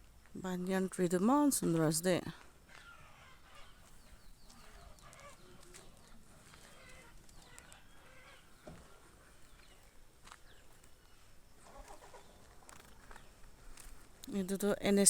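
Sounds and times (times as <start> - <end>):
low outdoor background noise: 0.0 - 15.0
bird calls and chirps: 2.7 - 13.4.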